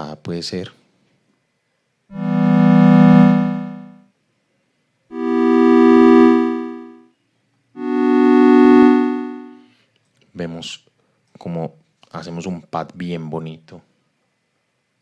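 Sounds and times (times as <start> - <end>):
square-wave oscillator: 2.1 - 4.0, 5.1 - 7.0, 7.8 - 9.6
synthesizer pad chords: 2.1 - 4.0, 5.1 - 7.0, 7.8 - 9.6.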